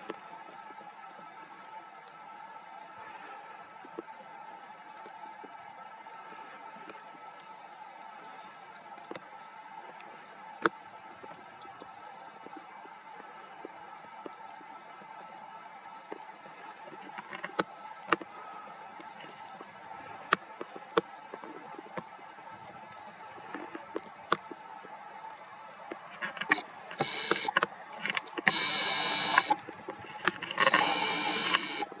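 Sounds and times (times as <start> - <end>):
steady background noise: 0.0 - 32.0
sharp clicks: 25.9 - 32.0
small electric motor whirring: 26.2 - 31.9.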